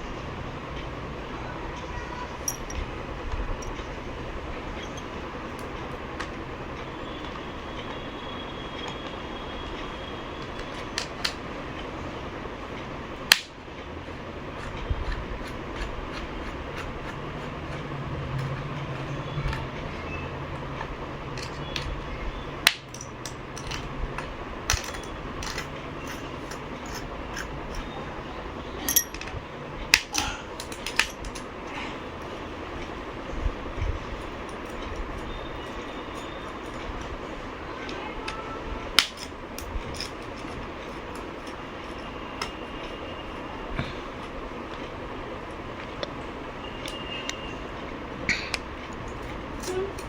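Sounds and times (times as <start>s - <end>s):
steady background hum: 0.0s - 50.0s
small tools clicking on laptop parts: 14.5s - 19.8s, 22.6s - 27.9s, 29.9s - 31.5s.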